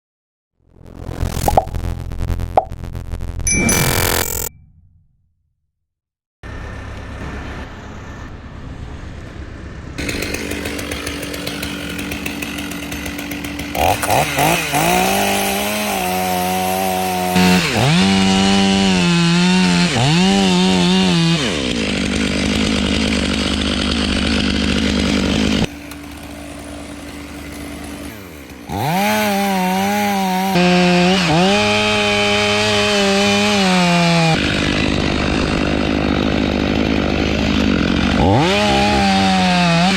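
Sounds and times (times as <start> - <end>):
chainsaw cutting wood: 10.0 - 39.9.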